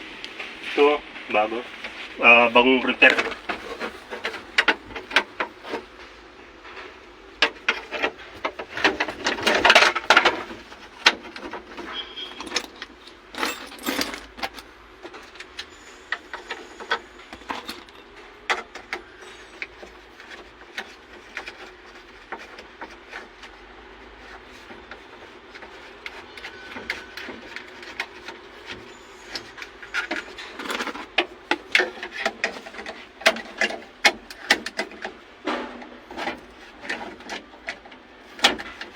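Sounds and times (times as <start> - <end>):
hand tools clinking on metal: 8.8 - 20.0.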